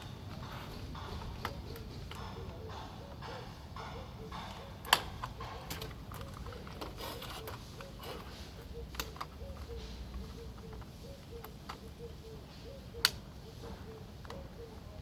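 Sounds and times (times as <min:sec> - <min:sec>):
clicks and knocks of small tools: 0:04.3 - 0:11.8.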